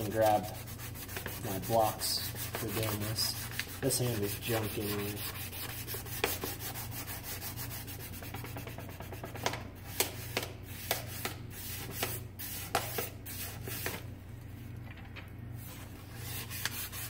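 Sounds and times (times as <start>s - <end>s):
sandpaper rubbing on knife handle: 0.0s - 10.0s, 16.0s - 17.0s
steady low hum: 0.0s - 17.0s.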